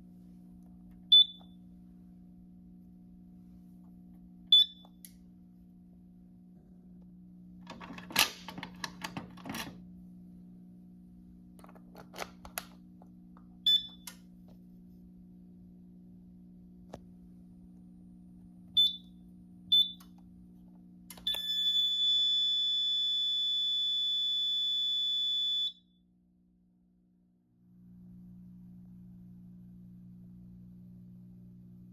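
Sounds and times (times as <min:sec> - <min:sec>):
low electrical hum: 0:00.0 - 0:31.9
steady high-pitched alarm tone: 0:21.3 - 0:25.9.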